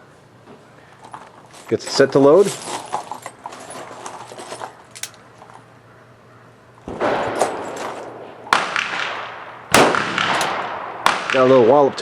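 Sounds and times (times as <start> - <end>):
revolver gunshot: 6.9 - 11.8.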